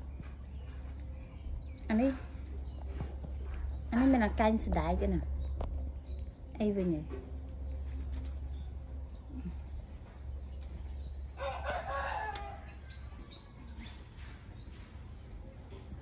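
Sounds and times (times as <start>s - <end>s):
bird chirps: 5.3s - 6.7s
rooster crowing: 11.3s - 14.0s.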